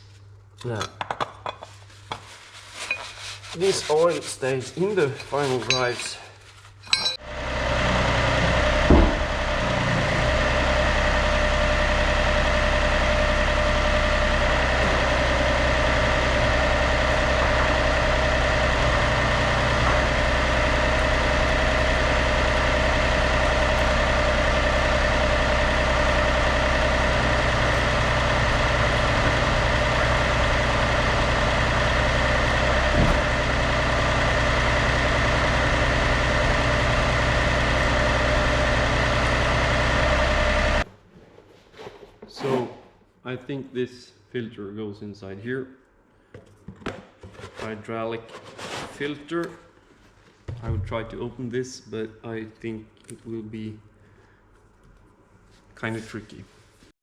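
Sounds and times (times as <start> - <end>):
diesel engine idling: 7.2 - 40.9.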